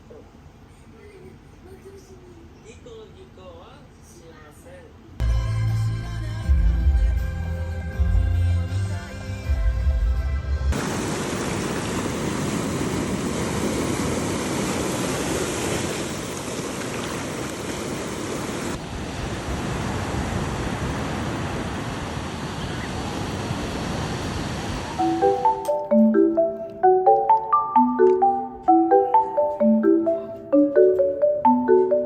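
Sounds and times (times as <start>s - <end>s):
sea surf washing onto beach: 10.8s - 25.3s.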